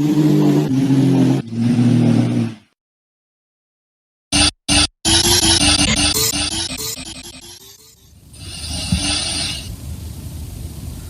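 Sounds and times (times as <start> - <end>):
person snoring: 8.4 - 9.7.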